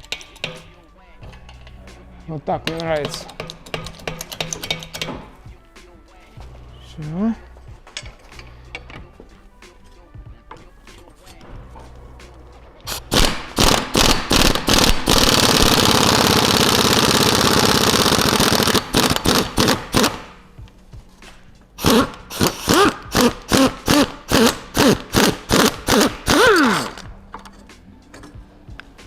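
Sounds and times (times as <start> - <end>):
air tool hammering: 2.7 - 5.3, 12.9 - 20.4, 21.8 - 27.0.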